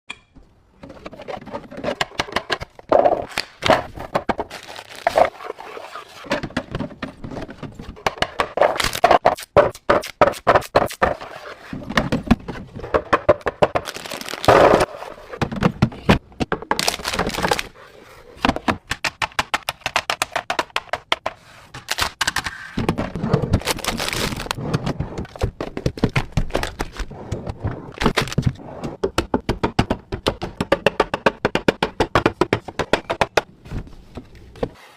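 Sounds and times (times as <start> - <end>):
food packages handled in fridge: 13.7 - 14.5.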